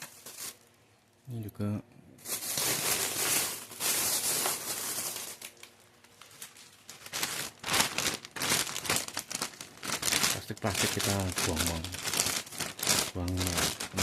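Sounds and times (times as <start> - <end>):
plastic packaging crinkling: 0.0 - 0.9, 2.2 - 14.0.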